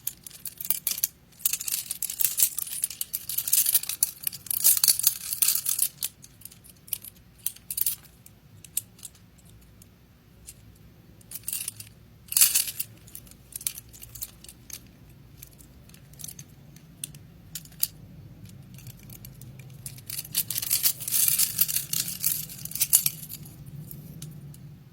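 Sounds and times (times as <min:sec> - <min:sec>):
handling noise: 0:11.2 - 0:24.6.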